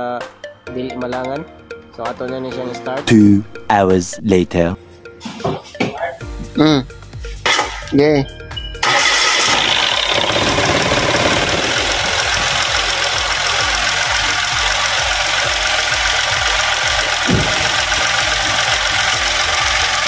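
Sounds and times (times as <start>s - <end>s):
car engine idling: 8.8s - 20.0s.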